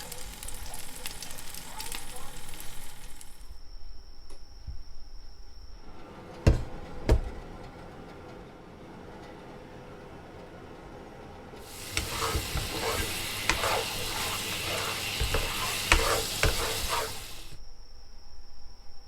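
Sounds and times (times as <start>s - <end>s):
food sizzling in a frying pan: 0.0s - 3.5s, 11.6s - 17.6s.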